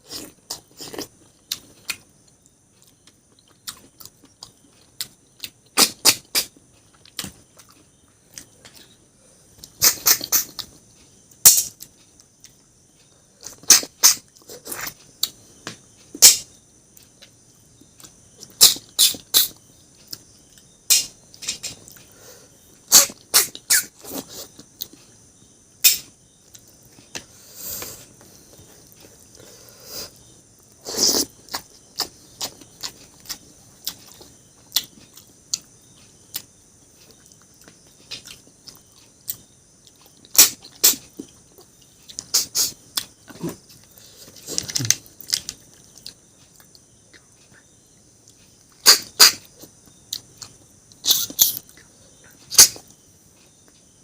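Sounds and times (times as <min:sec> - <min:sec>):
eating clicks and smacks: 0:30.6 - 0:43.6, 0:44.3 - 0:47.7.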